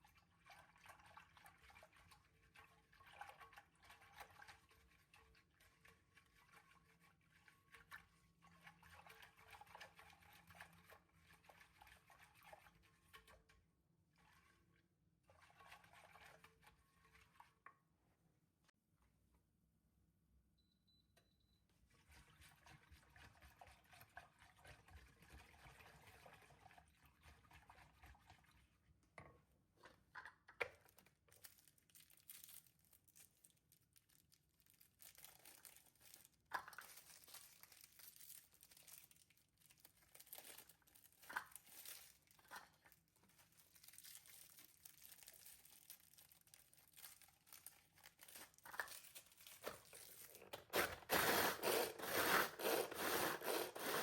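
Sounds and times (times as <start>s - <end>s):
crinkling and rustling: 29.8s - 54.0s.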